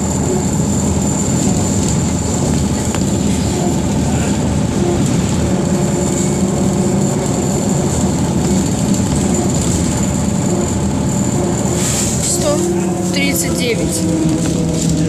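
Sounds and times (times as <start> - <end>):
bus running gear rumble: 0.0 - 15.0
constant high whine: 0.0 - 15.0.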